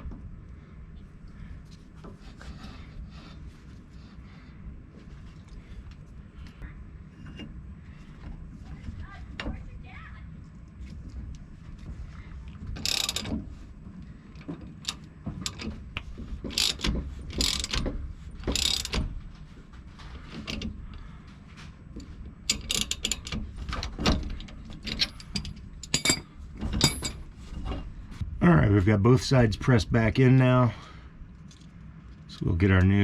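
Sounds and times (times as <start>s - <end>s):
hand ratchet clicking: 12.8s - 13.3s, 14.8s - 17.8s, 18.4s - 19.0s, 22.5s - 23.4s.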